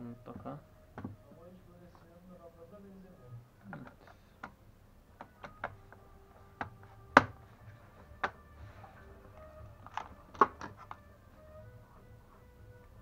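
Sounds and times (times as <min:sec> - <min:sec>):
faint background music: 0:00.0 - 0:13.0
laptop parts clicking and knocking: 0:01.0 - 0:01.2, 0:05.2 - 0:06.0, 0:06.6 - 0:07.4, 0:08.1 - 0:08.5, 0:09.4 - 0:11.1.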